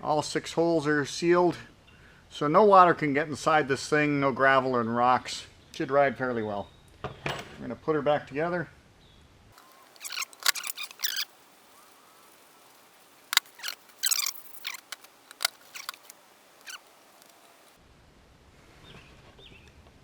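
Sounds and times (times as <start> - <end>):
metallic clicks and squeaks: 9.6 - 17.8.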